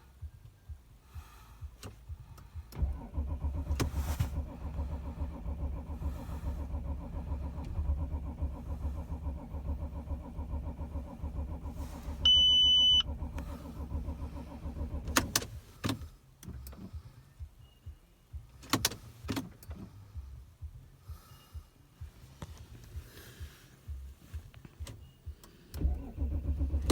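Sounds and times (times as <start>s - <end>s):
starter motor cranking: 2.8s - 15.6s, 25.8s - 26.9s
short electronic beep: 12.2s - 13.0s.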